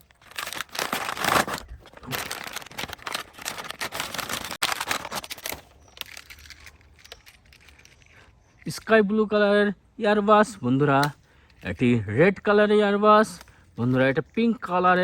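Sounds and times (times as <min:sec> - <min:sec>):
plastic packaging crinkling: 0:00.0 - 0:08.2.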